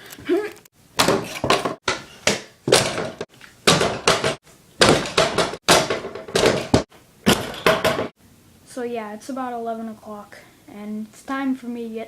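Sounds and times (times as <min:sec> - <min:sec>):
basketball bouncing indoors: 0:01.0 - 0:08.1.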